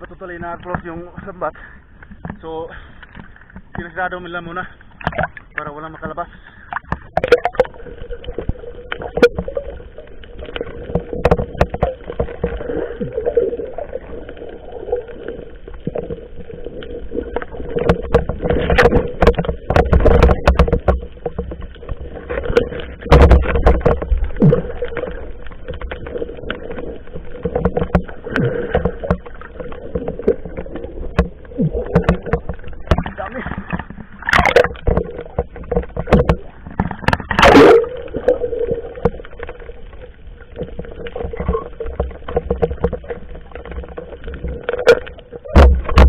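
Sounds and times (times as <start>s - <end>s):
water splashing around boats: 0.0s - 46.0s
knocks on boats: 31.1s - 37.4s, 45.5s - 46.0s.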